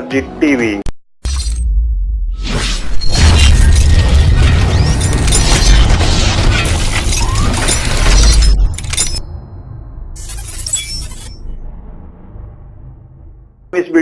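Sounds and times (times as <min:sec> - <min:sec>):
crashing shattering sound effects: 0:02.4 - 0:09.4, 0:10.2 - 0:11.7.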